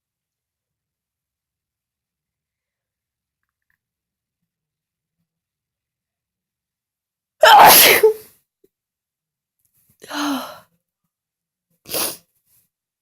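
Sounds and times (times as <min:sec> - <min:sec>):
person sneezing: 0:07.4 - 0:08.2, 0:11.9 - 0:12.3.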